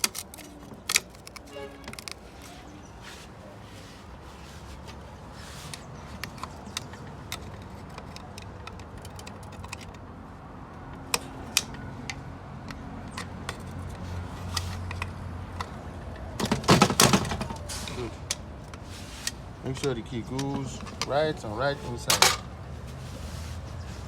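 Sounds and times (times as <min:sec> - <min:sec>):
small metal parts clicking: 0:00.0 - 0:02.5, 0:05.7 - 0:10.1.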